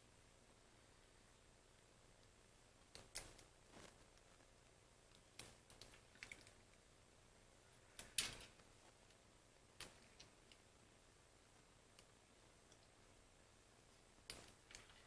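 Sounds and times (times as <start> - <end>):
small tools clicking and tapping: 14.3 - 15.0.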